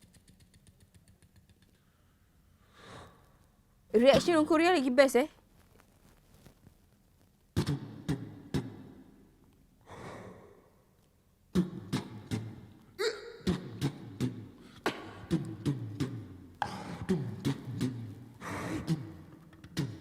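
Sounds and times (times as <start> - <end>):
beatbox mouth clicks and pops: 0.0 - 1.9, 7.5 - 9.6, 11.0 - 20.0.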